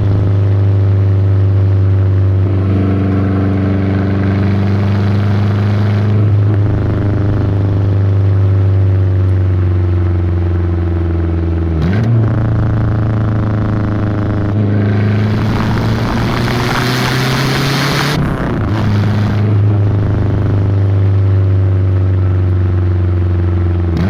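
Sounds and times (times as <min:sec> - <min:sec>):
car engine driving: 0:00.0 - 0:24.0
rush of turbo noise: 0:14.8 - 0:20.2.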